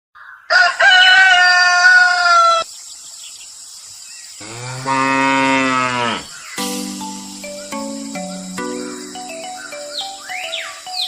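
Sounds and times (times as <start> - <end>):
cattle mooing: 4.4 - 6.3.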